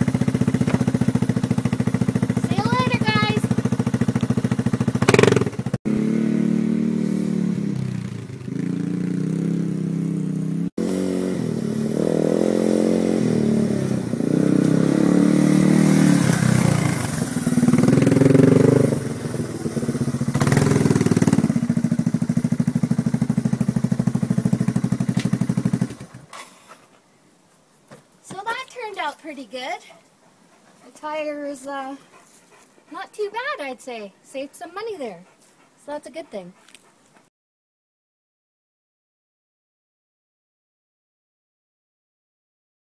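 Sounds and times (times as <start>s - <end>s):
quad bike engine running: 0.0s - 26.3s.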